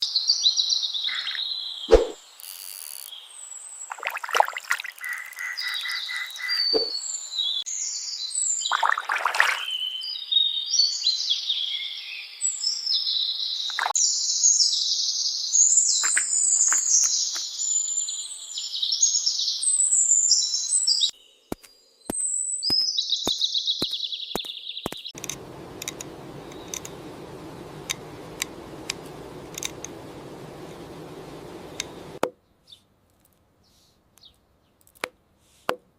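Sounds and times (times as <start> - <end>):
birds chirping and singing: 5.0 - 8.7, 22.2 - 32.2
sharp clicks and knocks: 24.4 - 32.3
light ticks: 24.9 - 32.2
low steady hiss: 25.2 - 32.2.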